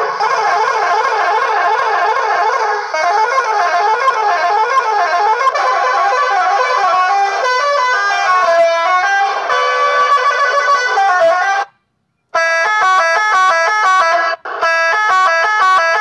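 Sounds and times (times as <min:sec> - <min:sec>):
electronic bus horn tune: 0:00.0 - 0:16.0.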